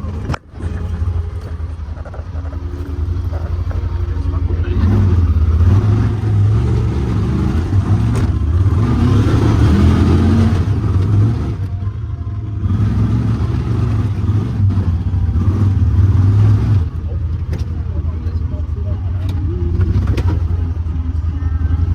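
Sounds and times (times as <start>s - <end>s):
engine running under throttle: 0.0s - 21.9s.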